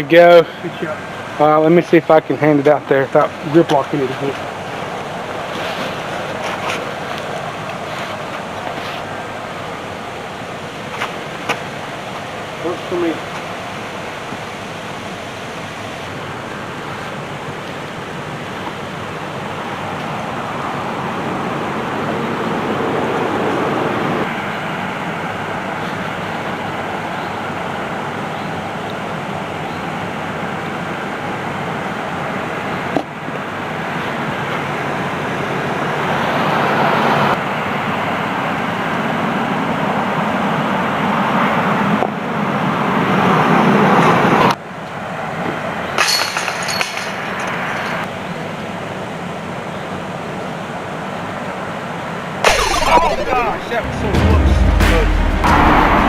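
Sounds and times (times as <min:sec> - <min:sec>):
road traffic noise: 0:00.0 - 0:56.0
outdoor rushing noise: 0:52.4 - 0:56.0
sharp knock: 0:52.5 - 0:56.0.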